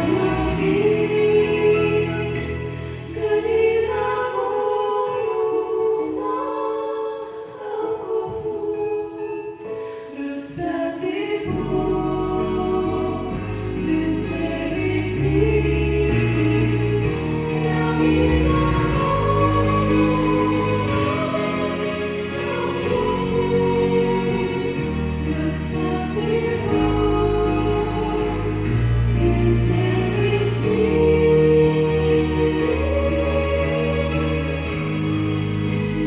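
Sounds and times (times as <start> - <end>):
women singing together: 0.0 - 35.1
musical accompaniment: 0.0 - 36.0
low bass notes: 11.5 - 36.0.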